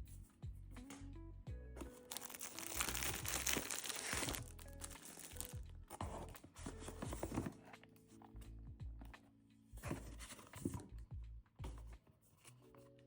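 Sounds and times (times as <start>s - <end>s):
soft background music: 0.0s - 13.0s
packaging crinkling and rustling: 2.0s - 5.6s.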